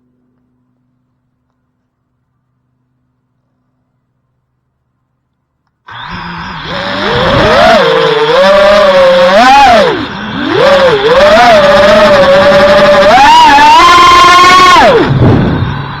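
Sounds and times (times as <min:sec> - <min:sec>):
quadcopter motors whining: 0:05.9 - 0:16.0.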